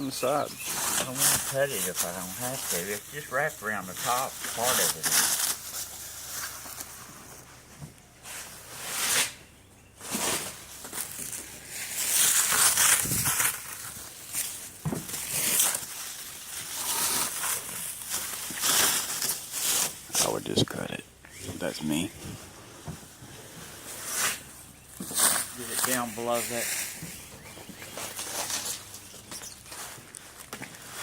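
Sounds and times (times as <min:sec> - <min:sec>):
plastic wrapping crinkling: 0:00.0 - 0:07.5, 0:10.0 - 0:20.4.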